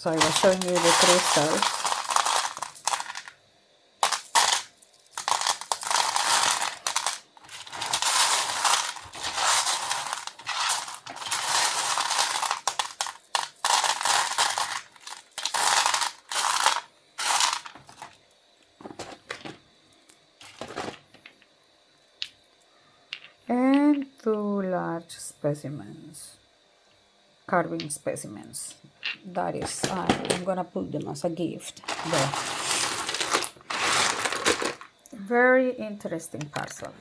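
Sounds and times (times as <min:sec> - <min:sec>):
stones clinking and rattling: 0:00.0 - 0:03.4, 0:04.0 - 0:18.2, 0:31.8 - 0:34.9.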